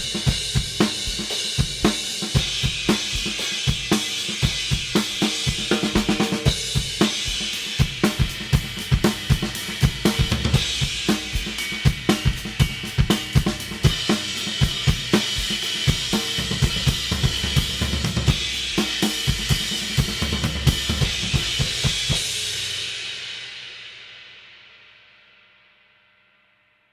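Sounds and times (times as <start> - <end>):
drum kit playing: 0.0 - 23.6
cymbal wash ringing: 10.6 - 15.9.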